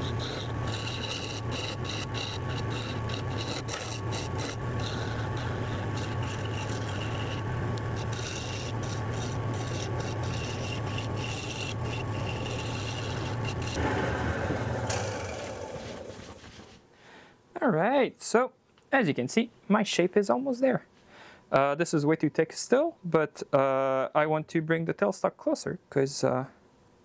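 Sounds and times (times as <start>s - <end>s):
gouge scraping spinning wood: 0.0s - 16.8s
wood lathe motor hum: 0.0s - 16.8s.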